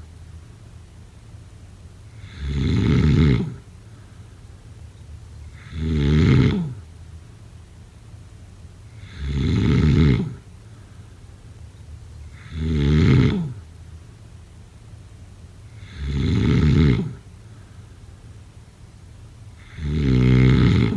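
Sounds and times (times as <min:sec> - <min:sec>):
person snoring: 0:12.4 - 0:13.6, 0:19.6 - 0:20.9.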